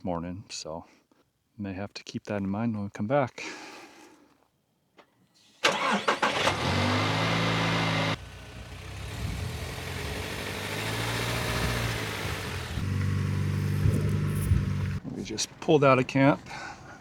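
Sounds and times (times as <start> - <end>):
road noise: 5.7 - 17.0
vehicle engine running: 6.6 - 15.0.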